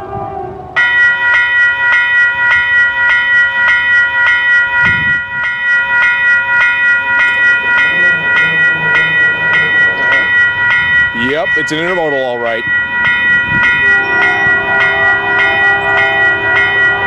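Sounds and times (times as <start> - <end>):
train horn chord: 0.0 - 1.2, 7.2 - 11.1, 13.4 - 17.0
freight train passing: 0.0 - 17.0
railway warning bell ringing: 0.8 - 17.0.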